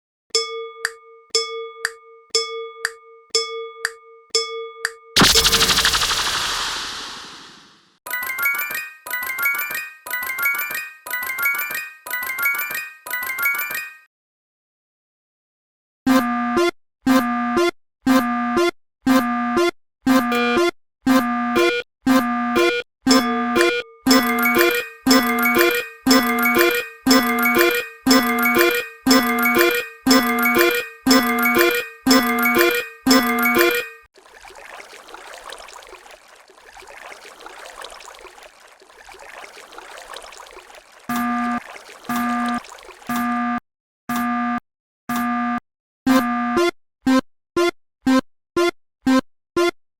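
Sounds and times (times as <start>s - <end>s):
electronic crossing warning chime: 22.6s - 34.0s
running water rush: 33.3s - 43.2s.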